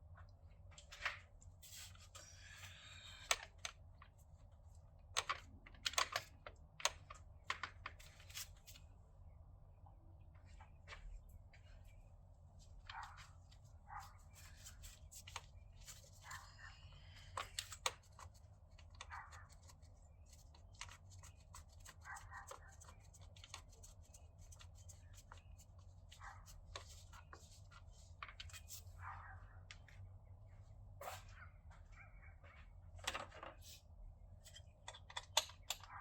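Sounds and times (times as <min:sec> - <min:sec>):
low steady hum: 0:00.0 - 0:36.0.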